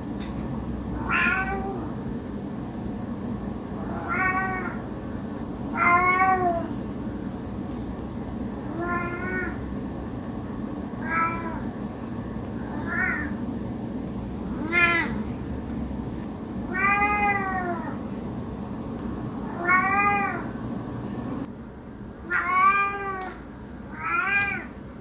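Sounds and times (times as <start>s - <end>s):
cat meowing: 1.0s - 2.0s, 3.8s - 4.8s, 5.7s - 6.7s, 8.7s - 9.6s, 11.0s - 11.7s, 12.6s - 13.4s, 14.5s - 15.4s, 16.7s - 18.0s, 19.5s - 20.5s, 22.3s - 24.8s.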